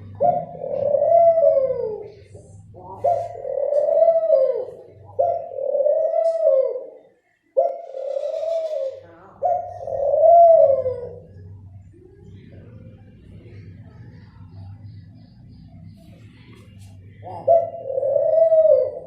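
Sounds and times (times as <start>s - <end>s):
dove cooing: 0.0s - 19.0s.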